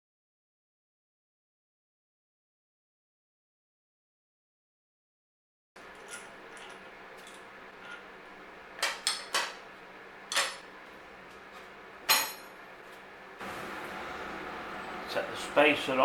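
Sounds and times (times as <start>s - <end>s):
metal tools clinking: 5.8s - 8.1s, 8.8s - 9.6s, 10.3s - 10.7s, 12.1s - 12.6s.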